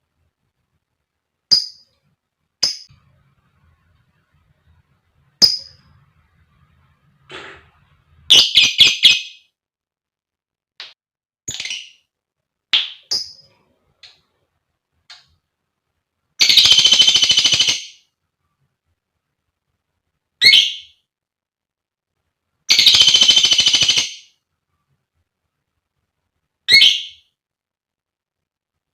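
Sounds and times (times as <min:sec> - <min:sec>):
lovebird chirping and trilling: 0:02.6 - 0:02.9, 0:05.4 - 0:05.9, 0:08.3 - 0:09.5, 0:11.5 - 0:12.1, 0:12.8 - 0:13.5, 0:16.4 - 0:18.0, 0:20.4 - 0:21.0, 0:22.7 - 0:24.3, 0:26.7 - 0:27.3.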